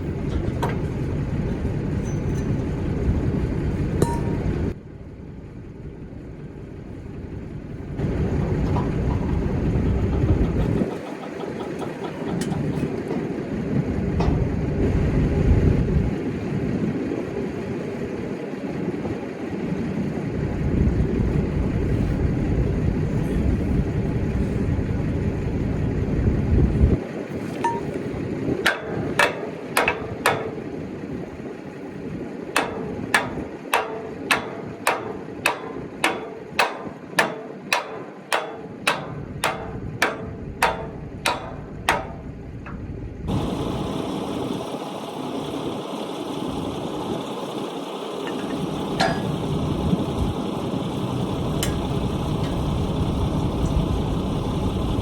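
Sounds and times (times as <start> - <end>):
low rumble: 0.0 - 10.9, 38.6 - 44.5
hammer ringing on steel: 4.0 - 4.6, 27.6 - 28.0, 28.7 - 30.8, 32.6 - 42.8, 49.0 - 49.4.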